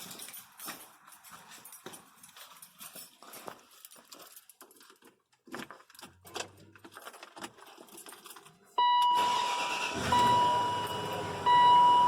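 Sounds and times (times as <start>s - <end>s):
dashboard warning tone: 8.8s - 12.0s.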